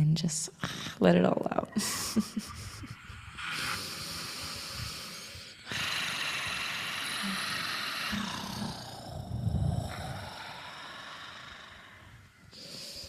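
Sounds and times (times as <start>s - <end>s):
breathy raspy growls: 5.0s - 13.0s.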